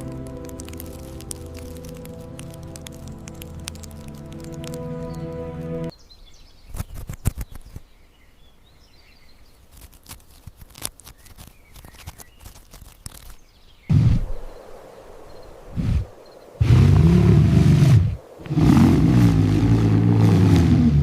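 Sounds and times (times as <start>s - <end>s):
scattered clicks: 0.0s - 5.9s
birds chirping: 0.0s - 9.7s, 11.0s - 21.0s
low animal roar: 16.6s - 21.0s.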